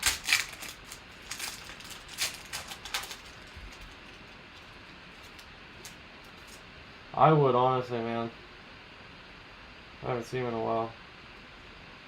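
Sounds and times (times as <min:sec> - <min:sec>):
trading cards rustling: 0:00.0 - 0:06.6.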